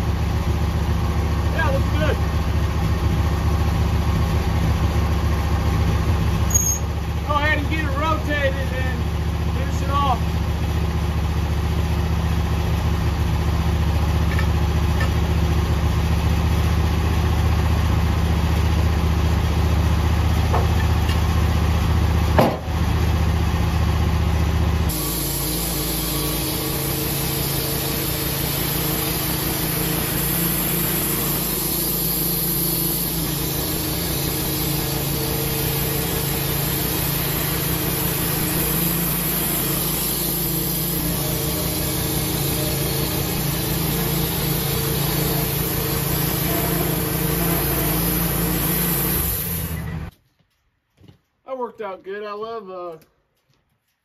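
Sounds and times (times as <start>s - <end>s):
band sawmill running: 0.0s - 50.1s
low engine hum: 0.0s - 50.1s
hissy machine sound: 24.8s - 50.1s.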